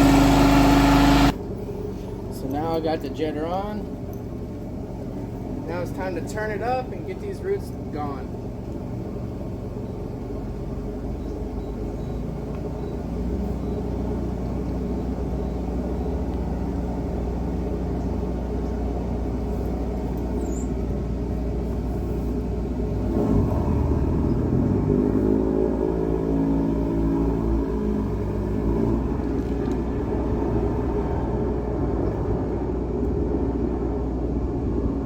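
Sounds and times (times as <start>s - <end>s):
hydro jetter running: 0.0s - 1.6s.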